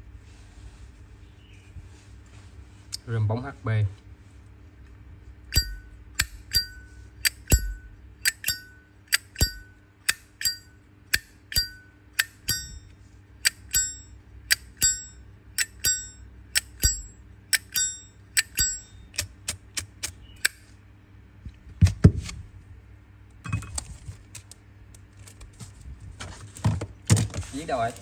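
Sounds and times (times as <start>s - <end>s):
metallic lighter ching: 5.5s - 19.3s.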